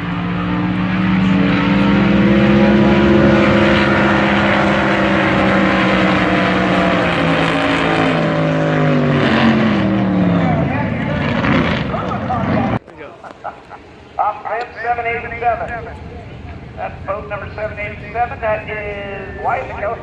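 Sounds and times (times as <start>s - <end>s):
boat engine at high revs: 0.0s - 12.8s.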